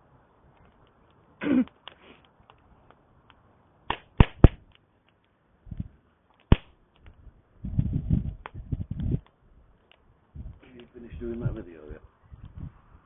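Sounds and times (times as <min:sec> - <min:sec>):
campfire crackling and popping: 0:00.6 - 0:05.4, 0:06.3 - 0:07.2.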